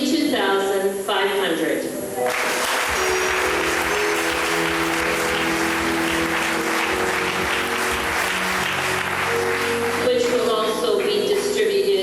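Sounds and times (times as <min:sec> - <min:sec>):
audience applauding: 0:02.2 - 0:11.6
held musical notes: 0:02.2 - 0:12.0.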